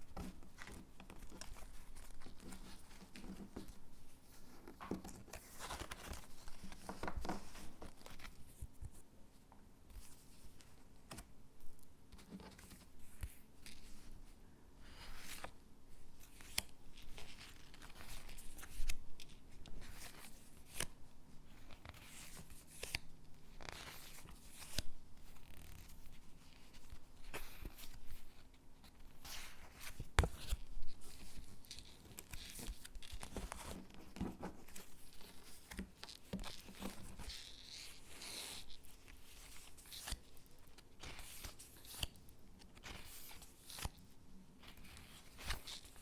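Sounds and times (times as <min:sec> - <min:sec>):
paper rustling: 0:00.0 - 0:09.0, 0:23.6 - 0:44.0, 0:44.6 - 0:46.0.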